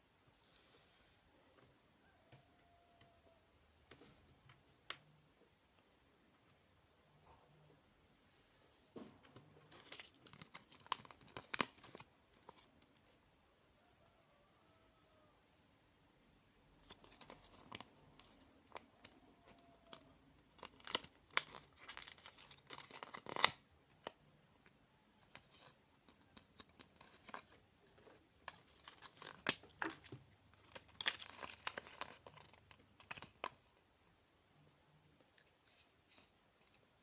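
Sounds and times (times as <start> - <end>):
packaging crinkling and tearing: 9.7 - 12.7, 16.8 - 24.2, 26.4 - 27.6, 28.4 - 33.6.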